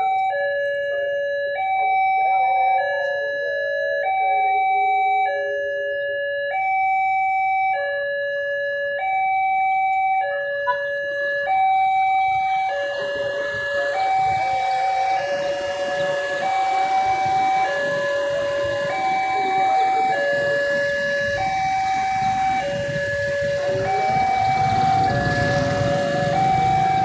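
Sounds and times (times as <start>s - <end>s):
level crossing two-tone warning siren: 0.0s - 27.0s
approaching train: 11.6s - 27.0s.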